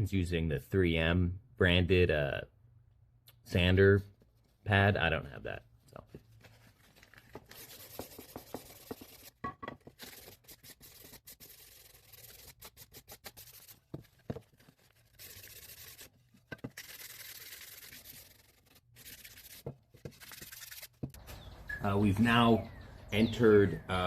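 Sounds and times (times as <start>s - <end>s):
sandpaper rubbing wood: 7.4s - 21.2s.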